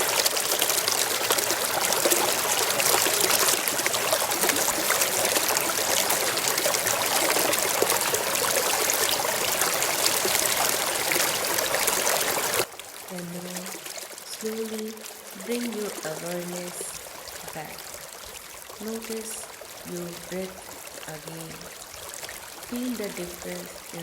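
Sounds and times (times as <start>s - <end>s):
waterfall rushing: 0.0s - 12.7s.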